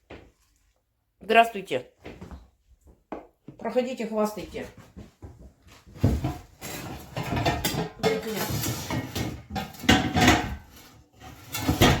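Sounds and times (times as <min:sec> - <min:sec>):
metal pots clanking and scraping: 0:06.2 - 0:12.0.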